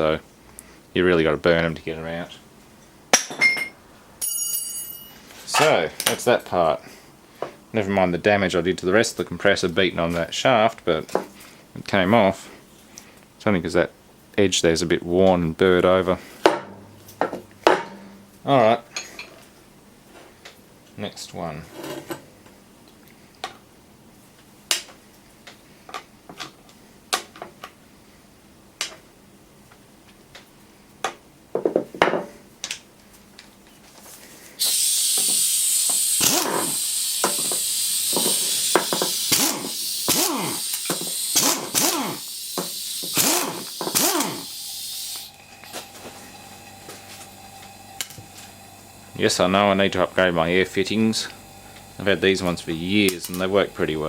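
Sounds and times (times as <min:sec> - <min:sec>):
compressed air hissing: 0:34.3 - 0:54.0.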